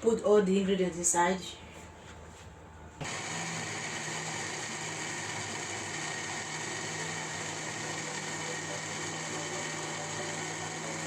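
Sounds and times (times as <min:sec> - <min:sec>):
electric blender running: 0:03.0 - 0:11.0.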